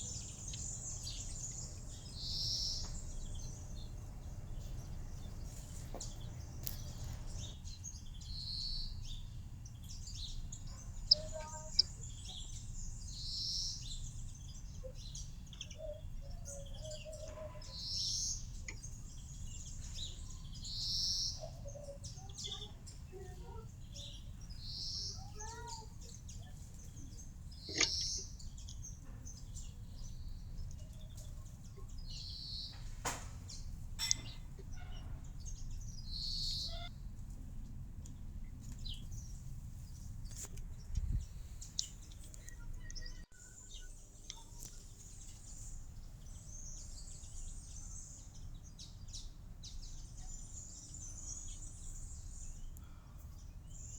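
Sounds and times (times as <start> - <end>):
faint chirps: 0.0 - 36.9, 40.3 - 53.9
high bird call: 10.7 - 12.0.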